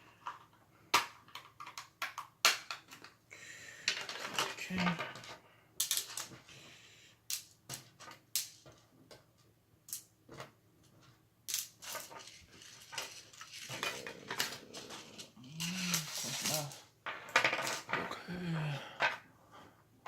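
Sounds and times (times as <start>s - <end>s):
small plastic parts clicking: 0.2s - 3.2s, 3.9s - 6.5s, 7.3s - 9.2s, 9.9s - 10.5s
rustling: 10.3s - 18.1s
low hum-like voice: 13.8s - 16.8s, 18.0s - 19.0s.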